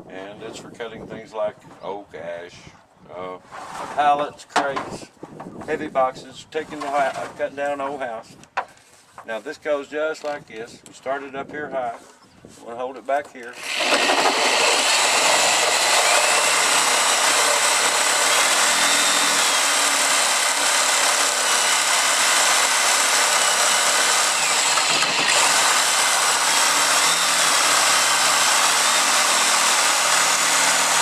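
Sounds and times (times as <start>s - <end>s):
reciprocating saw cutting wood: 13.5s - 31.0s.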